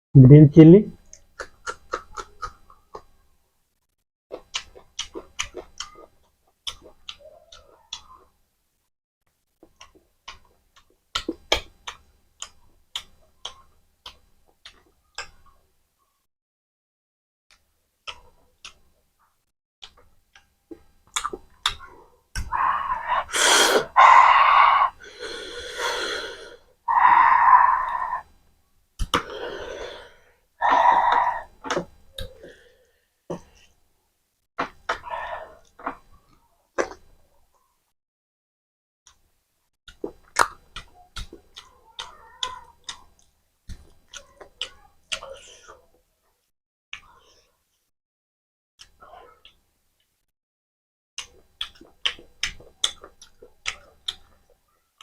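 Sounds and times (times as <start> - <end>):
wet mouth noises: 1.1 - 3.1, 4.3 - 8.3, 18.0 - 18.8, 21.1 - 24.9, 29.0 - 29.7, 34.6 - 36.1, 36.8 - 37.1, 39.9 - 45.8, 51.2 - 54.4
chewing clicks: 4.3 - 8.2, 9.7 - 15.4, 39.9 - 45.5, 51.2 - 54.4
breath sounds: 22.5 - 27.4, 29.1 - 31.5.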